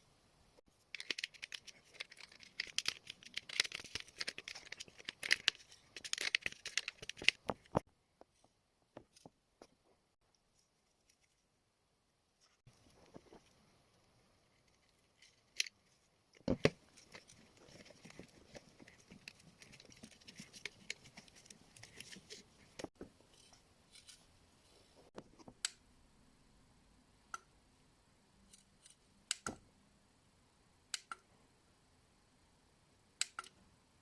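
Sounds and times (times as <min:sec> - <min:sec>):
packaging rustling: 0:01.0 - 0:07.8, 0:16.7 - 0:22.9.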